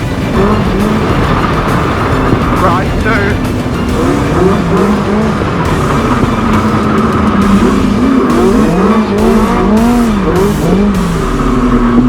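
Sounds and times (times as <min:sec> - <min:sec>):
engine revving: 0:00.0 - 0:12.0
vehicle rattling over rough ground: 0:00.0 - 0:12.0.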